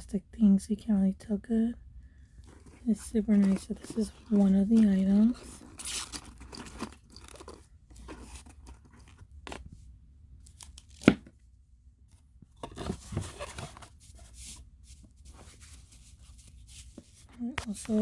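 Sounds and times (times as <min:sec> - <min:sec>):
plastic and cardboard rustling: 0:02.4 - 0:09.8, 0:12.5 - 0:18.0.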